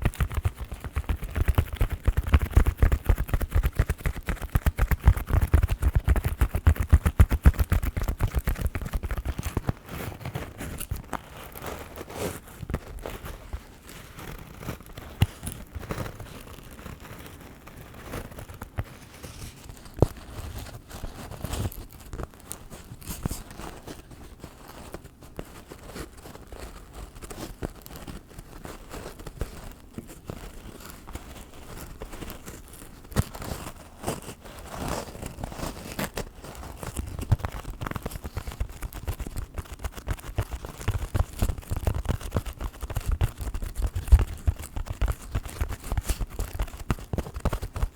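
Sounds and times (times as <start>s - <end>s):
fingernails scratching on a microphone: 0.0s - 47.9s.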